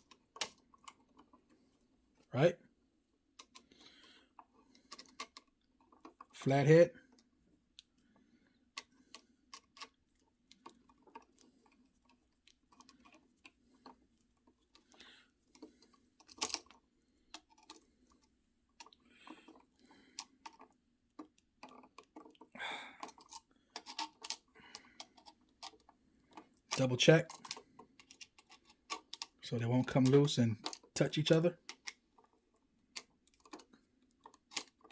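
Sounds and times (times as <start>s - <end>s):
screwdriver clicks and scrapes: 23.0s - 25.9s, 34.3s - 34.9s.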